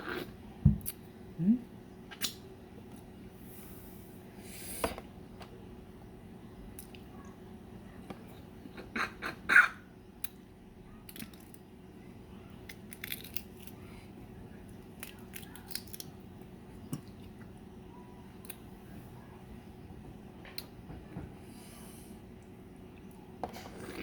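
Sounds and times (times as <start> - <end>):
eating egg close-up: 6.6 - 20.8
shell crackling and chewing: 12.6 - 13.8, 14.6 - 17.6.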